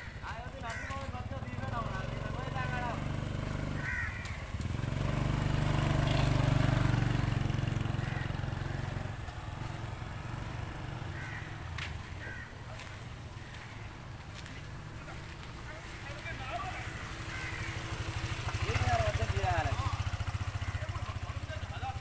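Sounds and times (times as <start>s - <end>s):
passing vehicle rumble: 1.2s - 12.4s, 13.0s - 22.0s
short bird calls: 3.7s - 4.6s.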